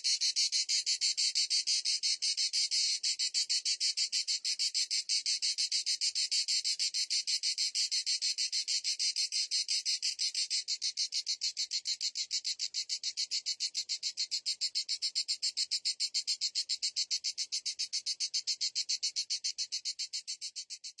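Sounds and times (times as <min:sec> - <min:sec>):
cicadas buzzing: 0:10.0 - 0:20.7.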